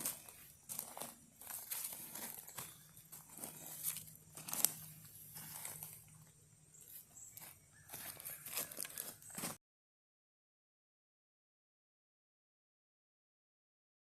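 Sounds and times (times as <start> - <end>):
rustling and crinkling: 0.0 - 9.6.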